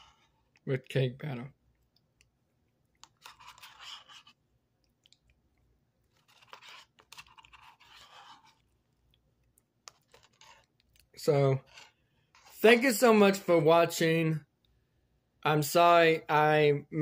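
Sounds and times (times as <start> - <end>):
person chewing: 1.6 - 11.2.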